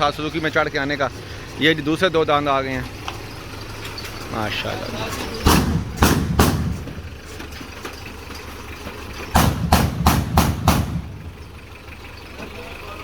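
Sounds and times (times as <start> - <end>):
truck engine idling: 0.0 - 13.0
loud bangs: 2.4 - 7.4, 9.2 - 11.8.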